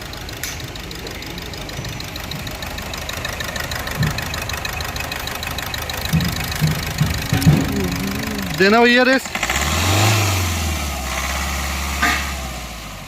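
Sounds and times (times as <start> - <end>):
car engine idling with ticking: 0.0 - 13.0
low engine thumps: 3.8 - 4.7, 6.0 - 8.7.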